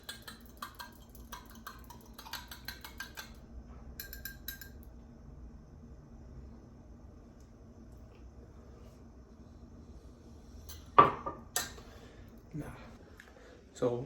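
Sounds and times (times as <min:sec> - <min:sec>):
dishes and cutlery clinking: 0:10.6 - 0:11.9.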